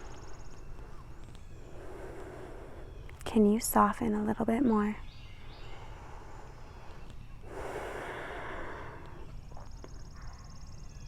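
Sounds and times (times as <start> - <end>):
person breathing out: 1.6 - 3.0, 7.5 - 9.3.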